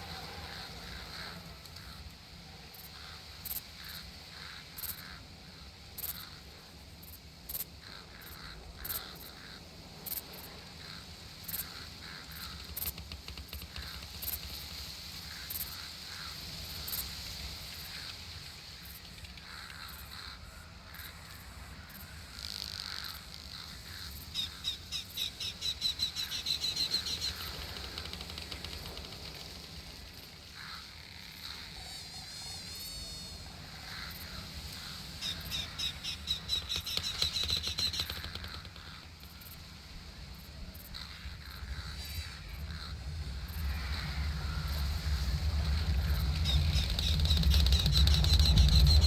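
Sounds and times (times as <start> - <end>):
warbling bird call: 22.4 - 49.0
high insect buzz: 30.6 - 39.7
rapid chirps: 31.4 - 39.6, 41.4 - 49.0
low rumble: 41.4 - 49.0.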